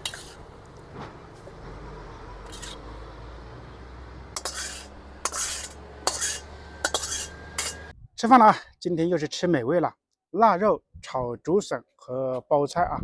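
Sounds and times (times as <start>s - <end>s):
utensil scraping a pan: 0.0s - 1.1s, 2.4s - 2.9s, 4.3s - 7.9s.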